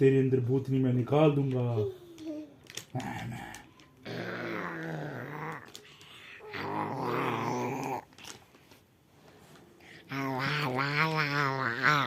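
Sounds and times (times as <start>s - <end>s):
child growling: 4.0s - 8.1s, 10.0s - 12.0s.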